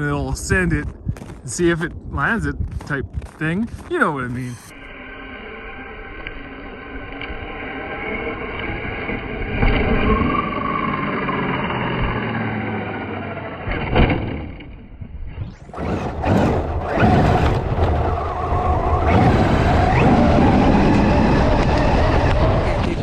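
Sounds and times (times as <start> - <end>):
tyres on snow: 0.2 - 4.8, 15.7 - 23.0
rc truck motor running: 4.4 - 14.8, 15.6 - 23.0.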